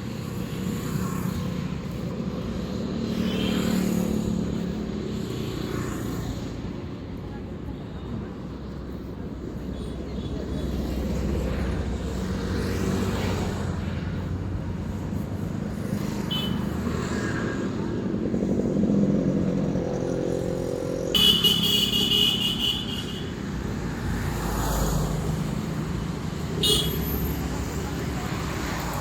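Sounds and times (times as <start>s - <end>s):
car horn: 21.2s - 23.3s, 26.6s - 27.0s.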